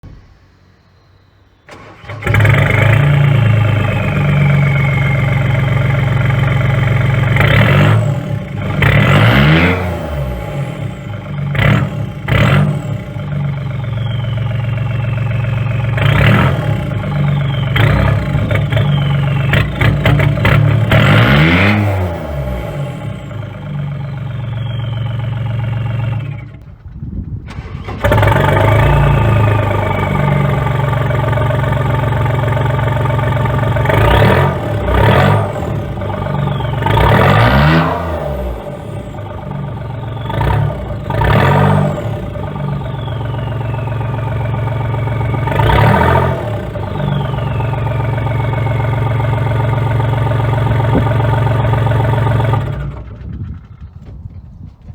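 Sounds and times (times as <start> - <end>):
diesel engine revving: 0.0 - 53.7
turbo whistle: 3.8 - 6.5, 13.5 - 21.6, 23.4 - 26.5, 34.0 - 51.1.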